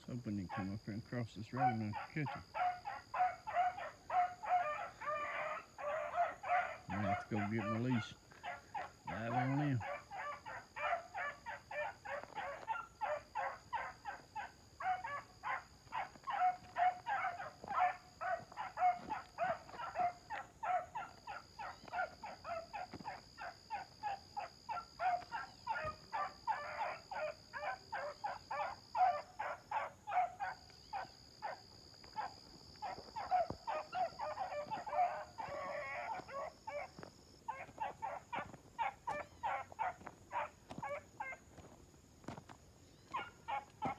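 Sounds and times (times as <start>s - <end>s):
puppies barking: 0.3s - 0.8s, 1.5s - 41.4s, 43.1s - 43.9s.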